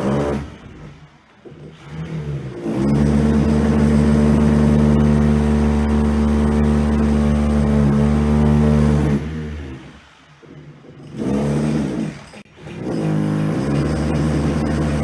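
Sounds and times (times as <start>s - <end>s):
power tool motor humming: 2.1s - 9.8s, 11.0s - 15.0s.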